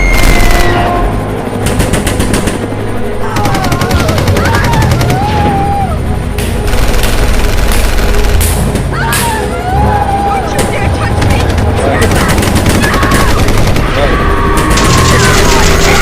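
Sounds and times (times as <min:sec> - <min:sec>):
machine-gun fire bursts: 0:01.6 - 0:02.6, 0:03.4 - 0:05.2, 0:06.6 - 0:08.5, 0:11.1 - 0:16.0.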